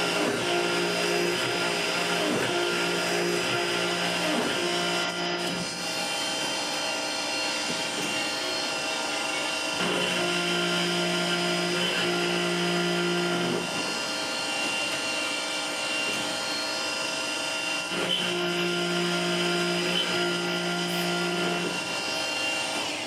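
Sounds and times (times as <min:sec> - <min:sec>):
machine mechanical hum: 0:00.0 - 0:23.0.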